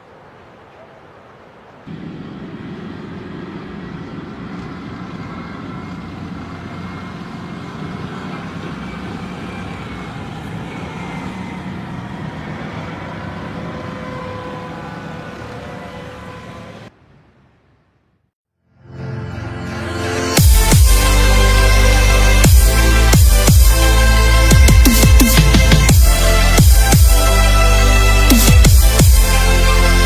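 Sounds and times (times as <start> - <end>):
faint whining tones: 0.0 - 18.0
heavy engine rumbling: 1.8 - 17.4, 20.4 - 30.0.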